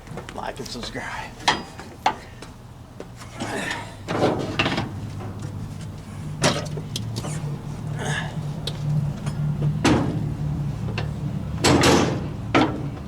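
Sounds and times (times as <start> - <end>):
hand tools and metal clanking: 0.0 - 13.0.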